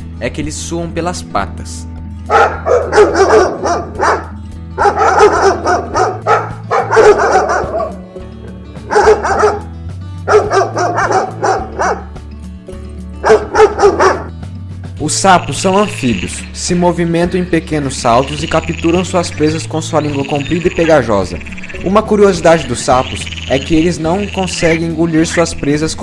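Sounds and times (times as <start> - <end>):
background music: 0.0 - 26.0
dog barking: 2.3 - 8.0, 8.8 - 12.2, 13.2 - 14.3.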